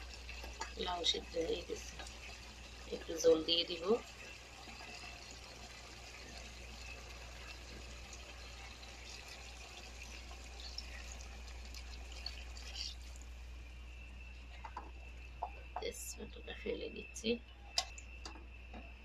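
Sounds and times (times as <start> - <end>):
water pouring into pot: 0.0 - 13.4
low constant hum: 0.0 - 19.0.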